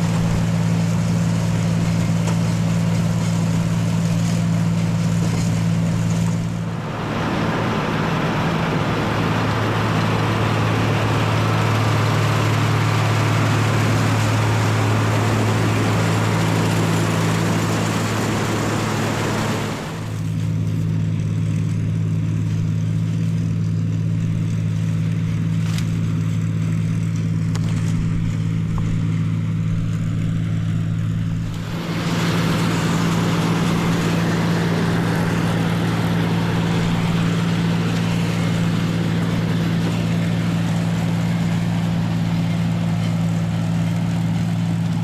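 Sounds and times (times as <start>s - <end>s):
tractor engine running: 0.0s - 45.0s
loud rushing noise: 5.9s - 20.3s, 31.4s - 42.9s.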